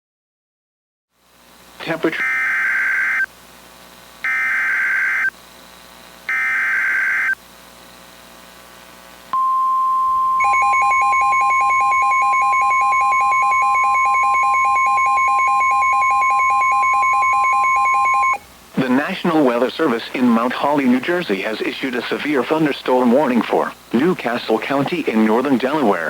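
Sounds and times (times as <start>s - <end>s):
radio hiss: 1.3s - 9.4s, 18.5s - 26.0s
steady warning alarm tone: 2.1s - 3.3s, 4.2s - 5.3s, 6.3s - 7.4s, 9.4s - 19.2s
screeching data bursts: 4.3s - 5.3s, 6.3s - 7.4s
fast pulsing two-pitch beeping: 9.4s - 19.1s.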